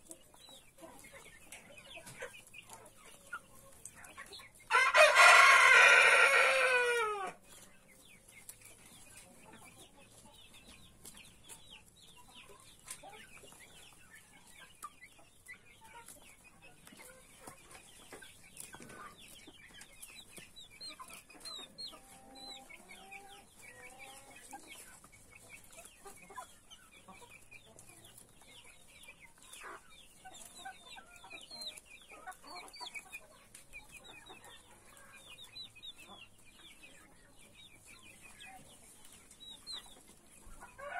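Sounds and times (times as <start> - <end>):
chickens clucking: 0.0 - 40.9
rooster crowing: 4.7 - 7.4.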